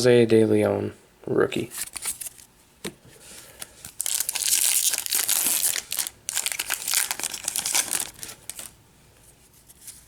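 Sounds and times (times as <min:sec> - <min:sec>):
card pack wrapper crinkling: 0:03.6 - 0:08.8.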